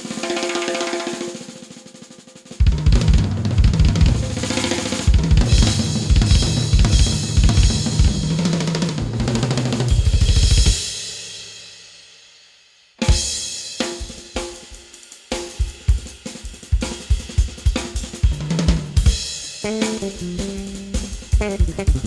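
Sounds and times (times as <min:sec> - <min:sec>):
cymbals: 0:00.0 - 0:02.9, 0:03.9 - 0:22.0
snare drum: 0:00.0 - 0:10.9, 0:13.0 - 0:22.0
bass drum kicks: 0:02.6 - 0:04.5, 0:05.1 - 0:08.4.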